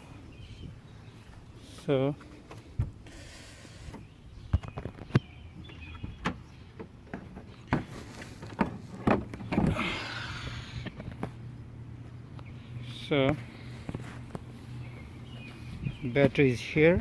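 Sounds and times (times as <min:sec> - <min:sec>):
hood latch clicks and knocks: 0:04.6 - 0:09.7.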